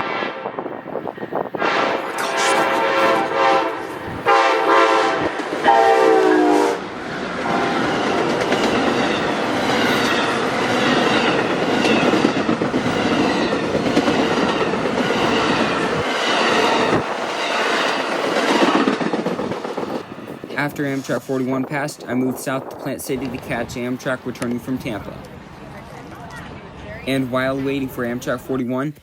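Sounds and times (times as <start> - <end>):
train horn blasts: 0.0 - 9.8
train cars rumbling and clacking: 0.0 - 29.0.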